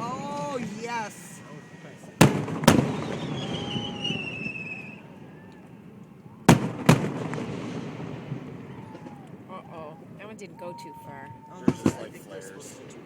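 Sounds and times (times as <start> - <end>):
falling firework whistle: 2.1 - 9.7
fireworks bangs with rumbling echo: 2.2 - 10.4, 11.3 - 13.0.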